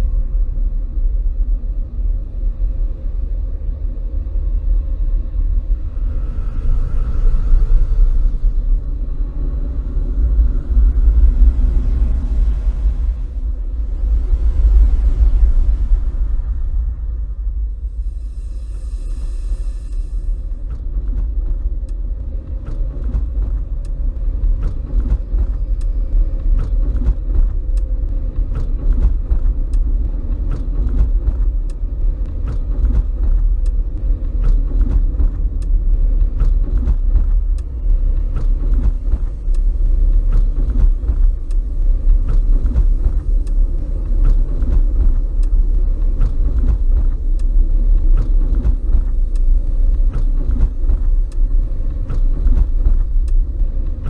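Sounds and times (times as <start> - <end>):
deep continuous rumble: 0.0 - 54.0
faint regular clicks: 19.9 - 54.0.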